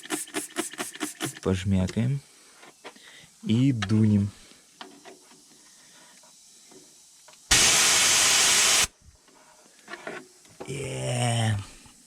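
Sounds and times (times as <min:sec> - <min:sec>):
compressed air blow gun hiss: 0:00.0 - 0:01.4, 0:04.2 - 0:09.1.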